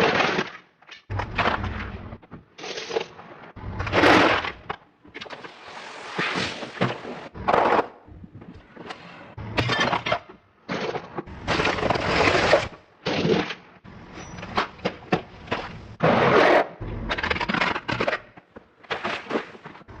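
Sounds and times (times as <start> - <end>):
objects crushed under car tyres: 0.0 - 5.4, 9.6 - 13.9.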